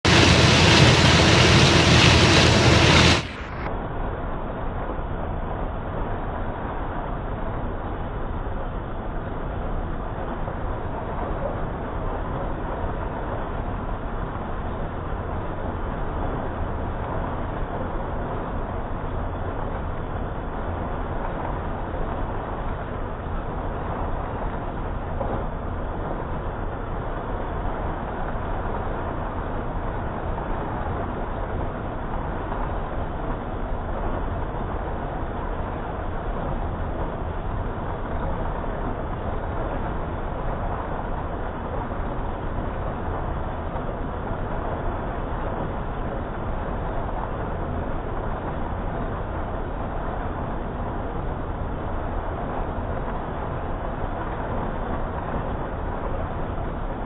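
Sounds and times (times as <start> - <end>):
combine harvester rumbling: 0.0 - 3.7.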